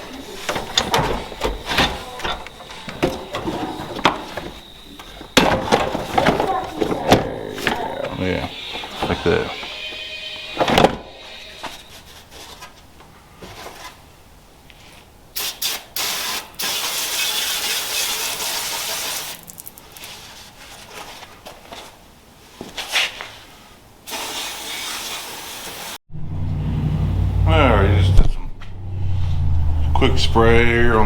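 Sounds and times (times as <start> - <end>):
aerosol spray can hissing: 24.1 - 25.9.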